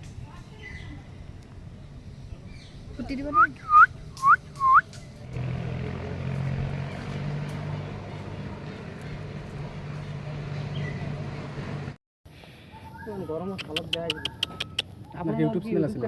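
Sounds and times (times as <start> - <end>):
rising whistle-like calls: 3.3 - 4.9
low engine drone: 4.6 - 12.0.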